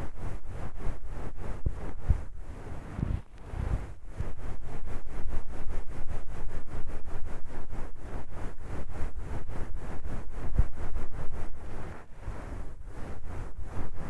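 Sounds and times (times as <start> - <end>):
towel rubbing on microphone: 0.1 - 5.4.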